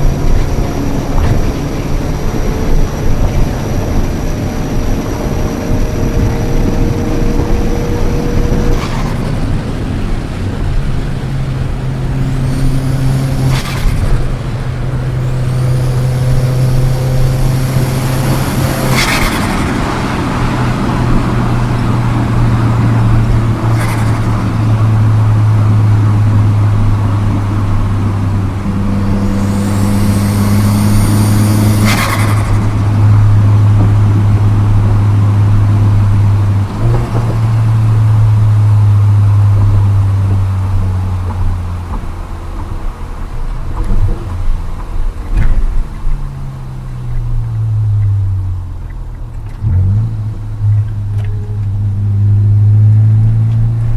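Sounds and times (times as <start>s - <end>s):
turbo flutter: 0.0s - 26.4s, 28.5s - 34.8s
car engine accelerating: 0.0s - 53.9s.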